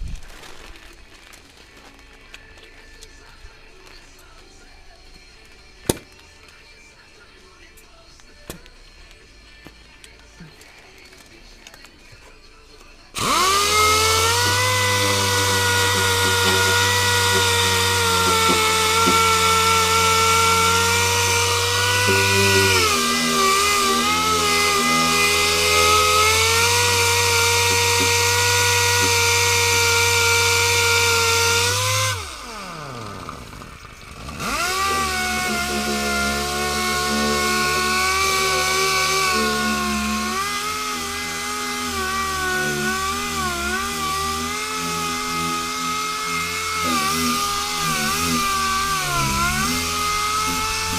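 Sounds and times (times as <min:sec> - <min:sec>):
angle grinder whining: 0:13.1 - 0:50.9
angle grinder spinning down: 0:13.2 - 0:50.9.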